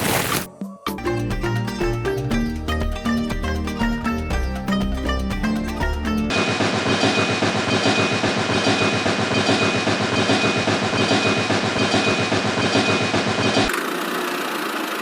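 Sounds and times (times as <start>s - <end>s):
miniature tractor motor clattering: 13.1s - 15.0s.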